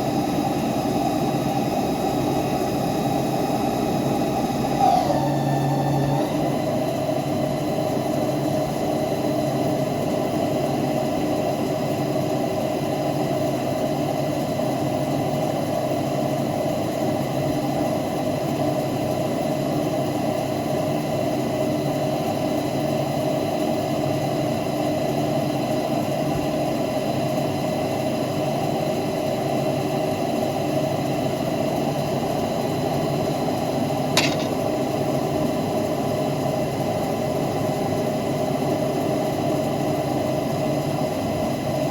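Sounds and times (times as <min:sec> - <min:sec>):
lathe machine hum: 0:00.0 - 0:11.2, 0:30.8 - 0:41.9.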